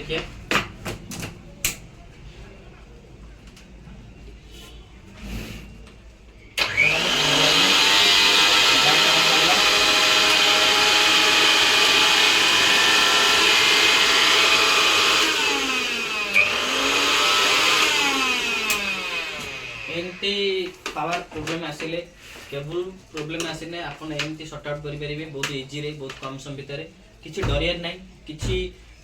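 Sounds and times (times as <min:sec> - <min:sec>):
electric grinder motor whining: 0:06.6 - 0:20.2.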